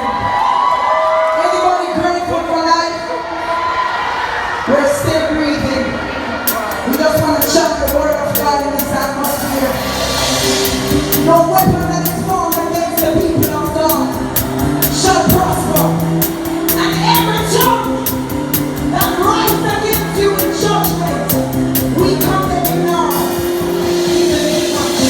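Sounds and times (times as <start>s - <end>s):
band playing: 6.5s - 25.0s.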